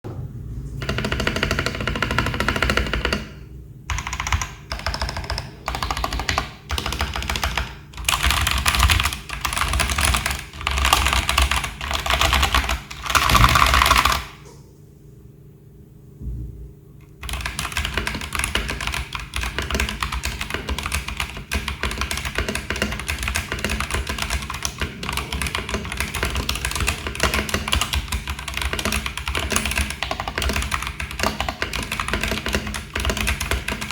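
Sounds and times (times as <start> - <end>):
typing on mechanical keyboard: 0.8 - 14.4, 17.2 - 33.9.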